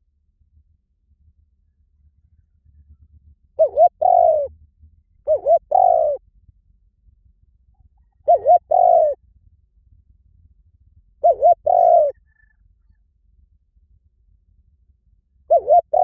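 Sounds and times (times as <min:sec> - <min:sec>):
dove cooing: 0:03.6 - 0:04.5, 0:05.3 - 0:06.2, 0:08.0 - 0:09.2, 0:11.2 - 0:12.2, 0:15.5 - 0:16.0.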